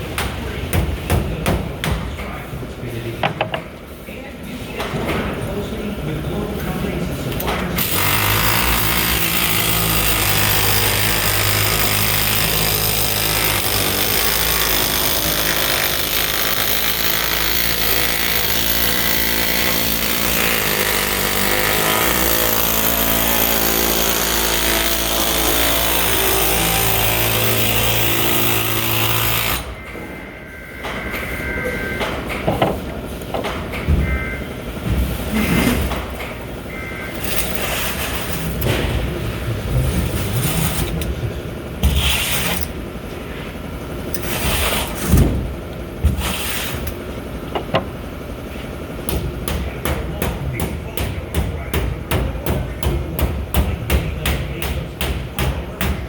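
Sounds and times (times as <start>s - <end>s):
pneumatic air hammer on sheet metal: 7.8s - 29.7s, 41.8s - 42.8s, 44.1s - 45.4s, 46.1s - 47.0s.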